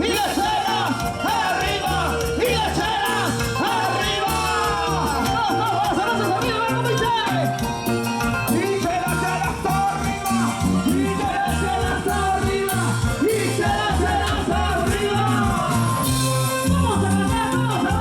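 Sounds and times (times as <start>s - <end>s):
latin band music: 0.0s - 18.0s.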